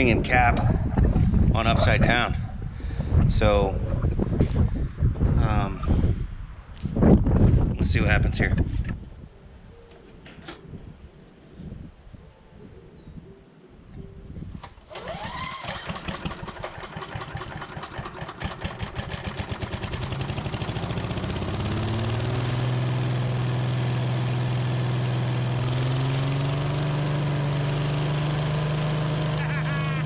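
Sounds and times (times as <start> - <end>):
small gasoline engine running: 14.9 - 30.0.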